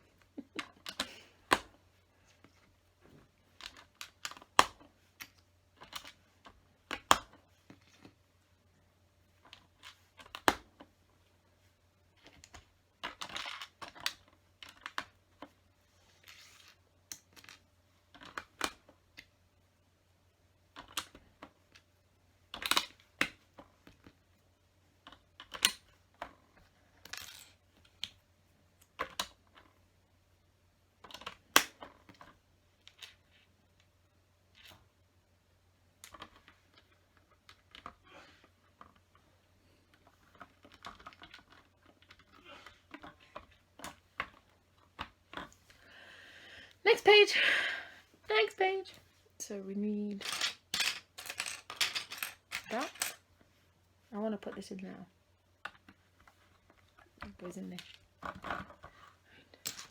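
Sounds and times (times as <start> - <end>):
plastic bricks clicking together: 22.5 - 24.1, 25.0 - 26.4, 50.2 - 53.2
rustling of plastic pieces: 50.2 - 53.2.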